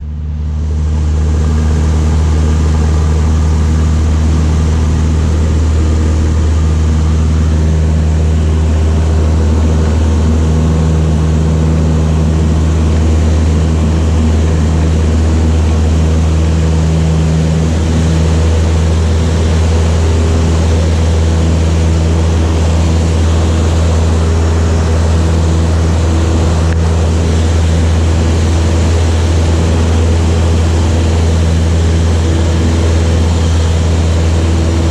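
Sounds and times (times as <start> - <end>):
light aircraft engine droning: 0.0 - 34.9.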